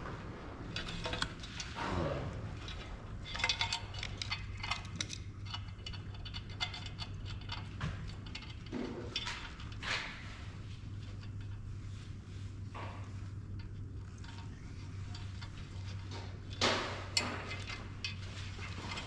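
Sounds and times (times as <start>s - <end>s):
steady low hum: 0.0s - 19.0s
metal tools clicking and rattling: 0.7s - 1.8s, 2.6s - 10.2s, 13.4s - 19.0s.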